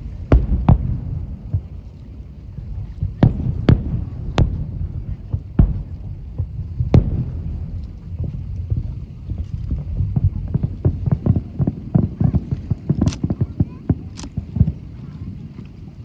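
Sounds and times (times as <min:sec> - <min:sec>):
fireworks booming: 0:00.0 - 0:15.6
sharp fireworks cracks: 0:00.0 - 0:15.6.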